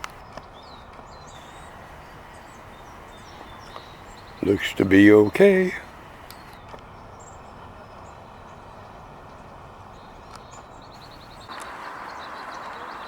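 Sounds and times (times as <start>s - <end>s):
outdoor background noise: 0.0s - 13.0s
faint high chirps: 1.4s - 6.6s, 11.0s - 13.0s.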